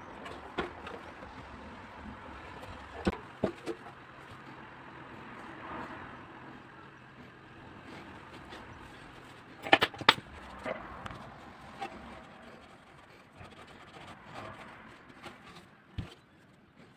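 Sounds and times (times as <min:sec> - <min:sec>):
tools knocking and clicking: 0:09.6 - 0:11.2.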